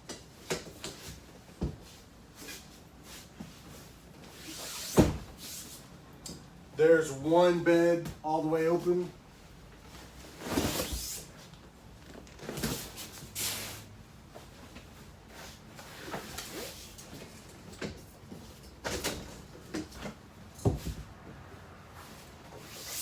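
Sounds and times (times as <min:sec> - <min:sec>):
sofa bed knocks and bumps: 0:01.5 - 0:01.9, 0:05.0 - 0:05.4, 0:20.6 - 0:21.3.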